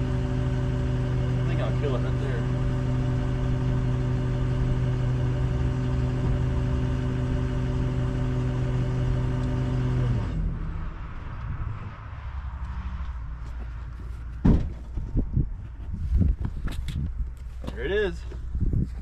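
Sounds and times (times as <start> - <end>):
engine idling: 0.0 - 10.4
low rumble: 0.0 - 13.9.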